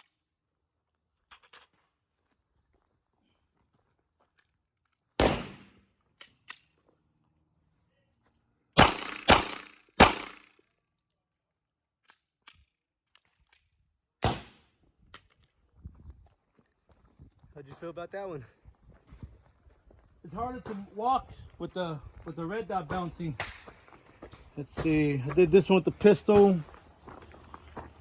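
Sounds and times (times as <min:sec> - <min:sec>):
rifle gunshots: 0:05.2 - 0:05.8, 0:08.8 - 0:10.4.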